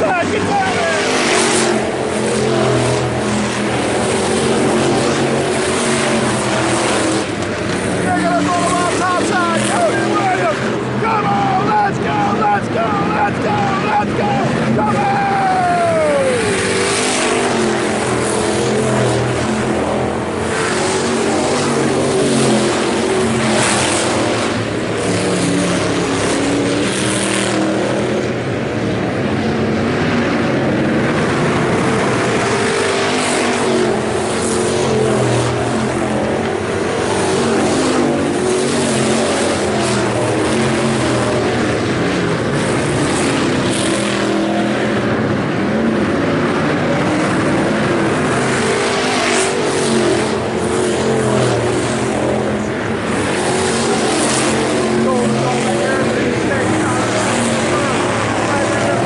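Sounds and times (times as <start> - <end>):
race car engines revving: 0.0 - 59.0.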